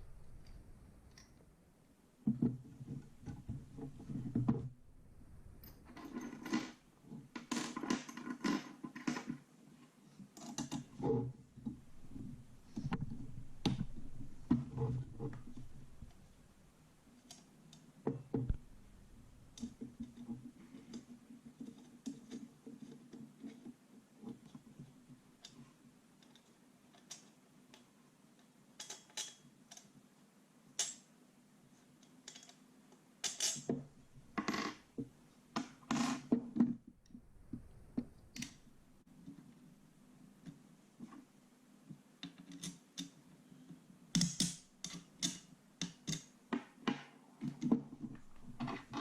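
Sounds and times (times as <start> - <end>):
clicks and knocks of toy gun parts: 28.8 - 29.9.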